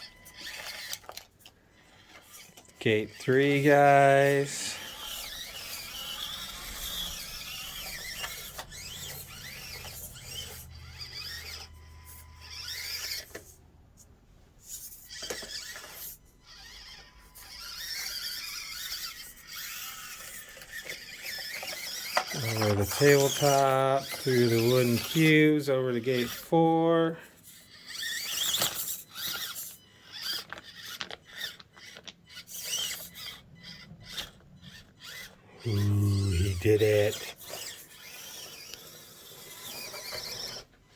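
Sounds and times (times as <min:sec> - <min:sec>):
toy car electric motor whining: 0:00.0 - 0:40.9.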